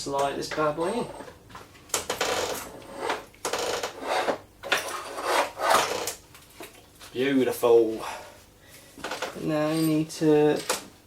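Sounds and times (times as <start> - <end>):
metal scraping and rubbing: 2.1 - 6.1.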